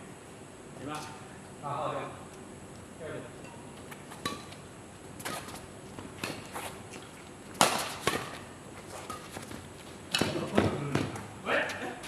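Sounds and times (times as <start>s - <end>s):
footsteps on court: 5.2s - 11.9s
racket hitting shuttlecock: 7.6s - 9.4s.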